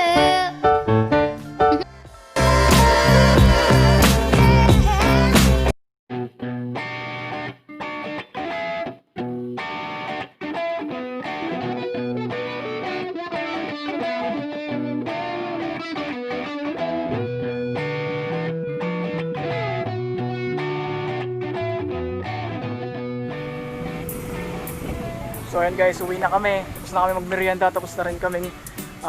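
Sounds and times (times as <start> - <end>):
rock music with distorted guitar: 1.2 - 25.6.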